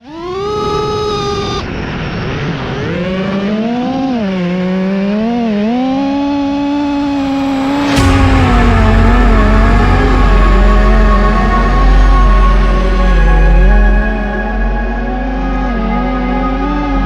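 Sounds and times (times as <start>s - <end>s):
motor running at high revs: 0.0s - 1.7s, 2.4s - 8.8s
heavy bass music: 6.8s - 17.0s
sharp crack: 7.2s - 14.2s.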